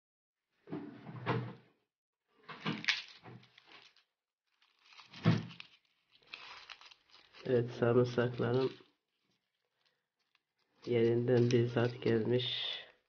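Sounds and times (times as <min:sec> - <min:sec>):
garlic skins crackling: 0:02.7 - 0:13.0.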